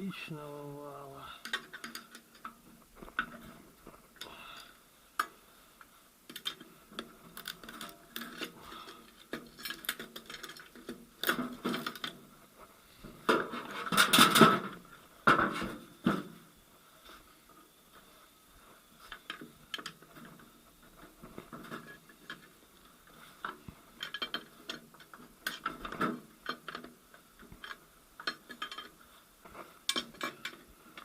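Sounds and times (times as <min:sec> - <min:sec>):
metal parts clinking and clattering: 0:07.4 - 0:12.2, 0:23.4 - 0:26.9, 0:27.6 - 0:29.0, 0:29.8 - 0:31.0.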